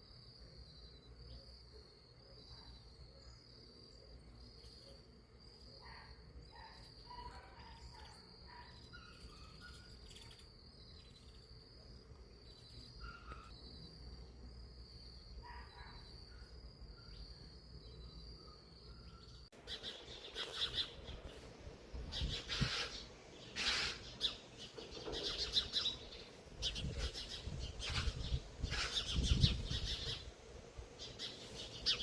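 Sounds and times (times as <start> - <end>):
bird chirps: 0.6 - 14.4, 15.0 - 21.5, 22.1 - 30.3, 31.0 - 32.0
insect trilling: 4.4 - 14.2, 22.1 - 24.6.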